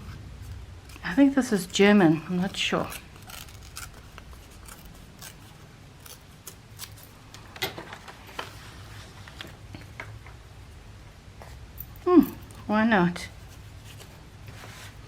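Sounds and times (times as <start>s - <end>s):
scissors cutting paper: 0.9s - 7.2s.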